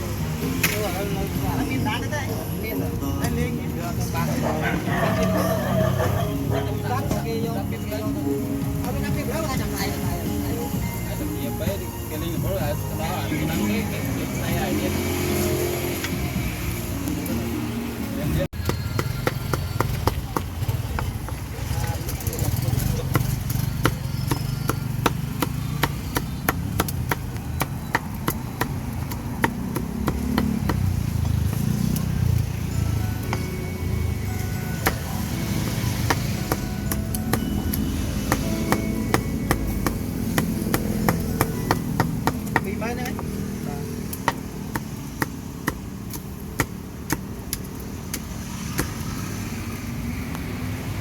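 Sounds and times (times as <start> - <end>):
low traffic rumble: 0.0 - 51.0
knife chopping on board: 23.0 - 31.8, 34.8 - 43.5, 44.1 - 47.3.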